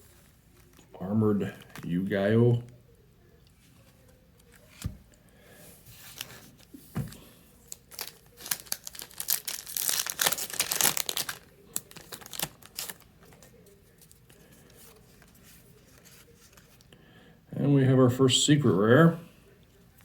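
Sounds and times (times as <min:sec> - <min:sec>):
foil wrapper crinkling and tearing: 0:07.7 - 0:15.0.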